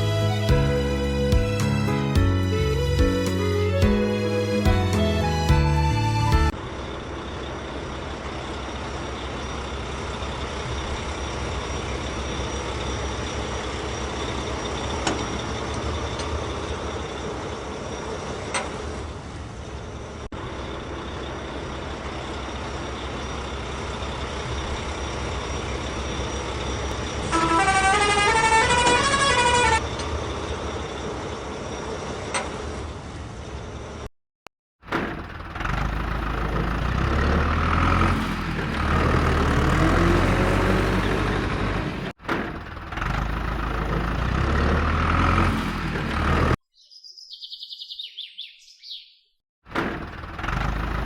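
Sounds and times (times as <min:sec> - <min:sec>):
musical horn tune: 0:00.0 - 0:06.6, 0:27.3 - 0:29.8
truck engine running: 0:00.0 - 0:32.4, 0:34.9 - 0:46.6, 0:49.8 - 0:51.0.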